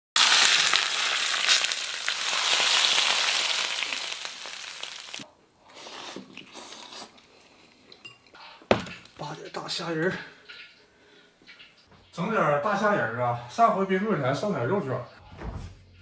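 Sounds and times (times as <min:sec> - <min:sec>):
food sizzling in hot oil: 0:00.0 - 0:05.3.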